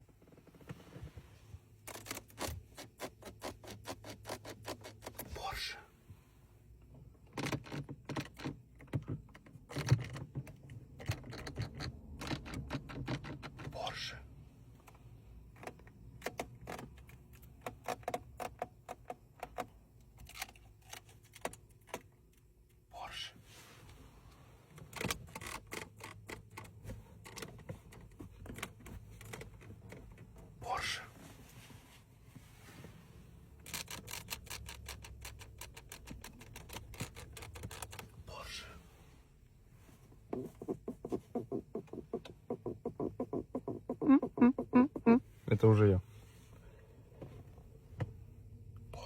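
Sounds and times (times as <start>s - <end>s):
car interior trim creaking: 0.0s - 5.3s, 7.2s - 14.2s, 14.8s - 22.1s, 23.8s - 38.5s, 39.8s - 46.4s
car trim rattling clicks: 1.8s - 5.2s, 7.3s - 13.7s, 33.6s - 38.2s.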